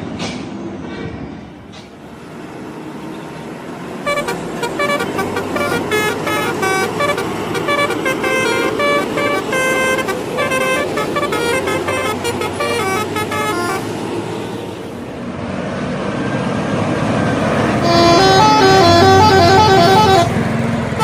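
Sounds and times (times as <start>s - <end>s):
bus engine: 0.0s - 21.0s
road noise: 0.0s - 21.0s
air horns playing a tune: 4.1s - 13.9s, 17.8s - 20.4s.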